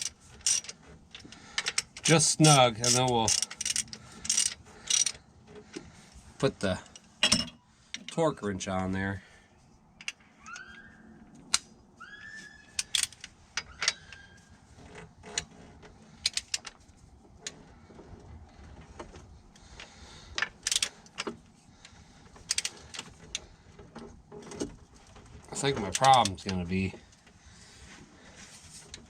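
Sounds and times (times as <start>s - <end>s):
short rising squeak: 10.4s - 11.2s, 12.0s - 12.9s.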